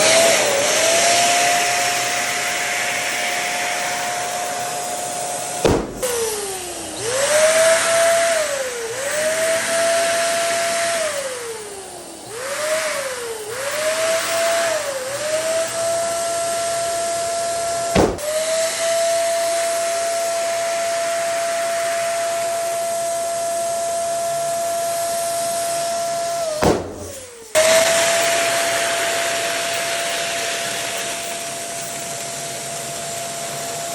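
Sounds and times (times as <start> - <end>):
electric balloon pump whining: 0.0 - 33.9
balloon pops: 5.6 - 6.3, 18.0 - 18.3, 26.6 - 27.3.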